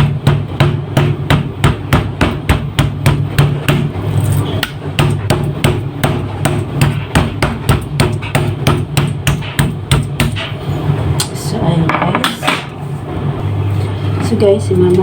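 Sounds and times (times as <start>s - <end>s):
meat mallet pounding chicken: 0.0s - 10.6s.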